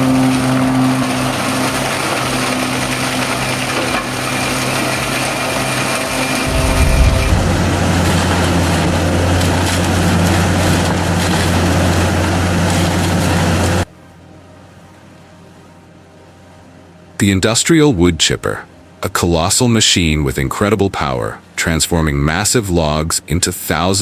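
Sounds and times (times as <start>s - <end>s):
heavy machinery engine running: 6.4s - 10.0s.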